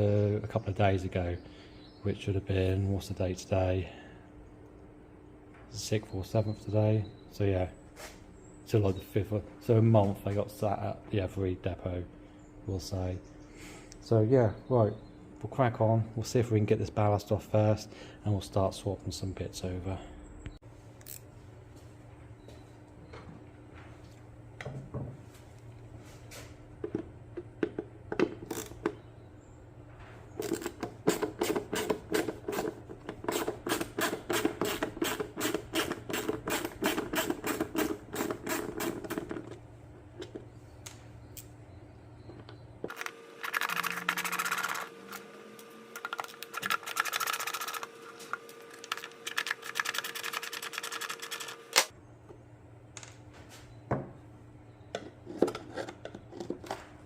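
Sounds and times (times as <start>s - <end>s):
rapid tool clicks: 46.0s - 51.9s.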